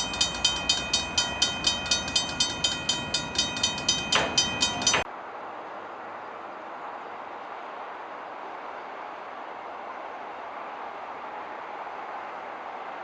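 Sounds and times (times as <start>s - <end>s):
level crossing bell ringing: 0.0s - 5.1s.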